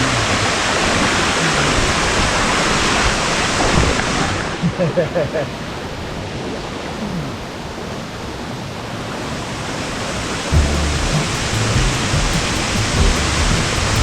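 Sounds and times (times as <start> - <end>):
waterfall rushing: 0.0 - 4.8, 5.5 - 14.0
background music with low beat: 10.5 - 14.0.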